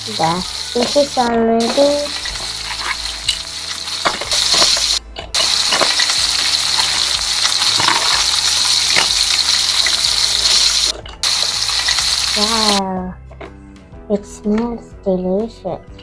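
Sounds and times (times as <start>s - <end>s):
frying sizzle in pan: 0.0s - 12.8s
plastic utensils clicking: 0.1s - 12.8s.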